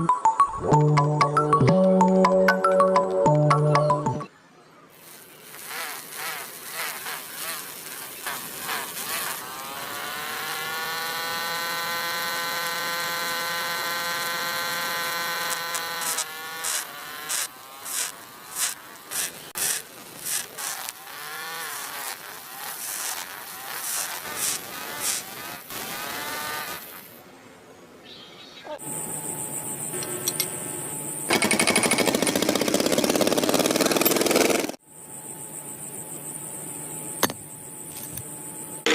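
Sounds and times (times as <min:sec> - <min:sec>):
toy motor buzzing: 0:05.0 - 0:27.2.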